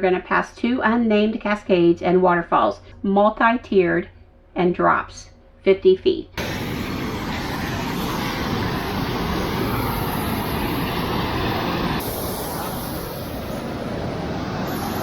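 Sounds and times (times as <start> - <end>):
waterfall rushing: 6.4 - 15.0.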